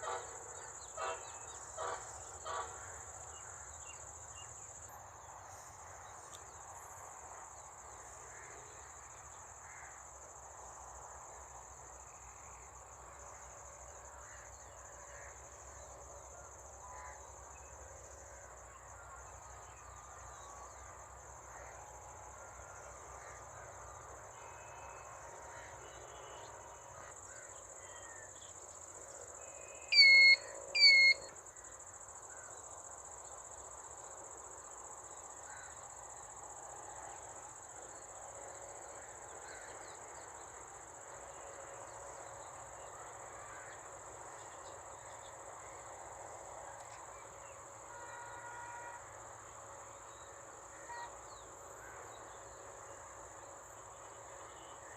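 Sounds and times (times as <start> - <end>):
crickets droning: 0.0 - 54.9
faint bird chirps: 29.5 - 31.3
loud short calls: 29.9 - 31.3.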